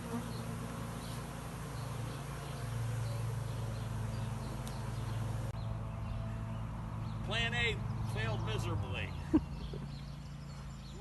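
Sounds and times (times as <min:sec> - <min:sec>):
bee swarm buzzing: 0:00.0 - 0:05.6.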